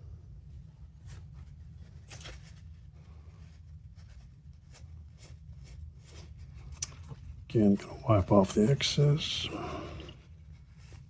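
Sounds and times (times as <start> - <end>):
low steady hum: 6.8 - 10.6.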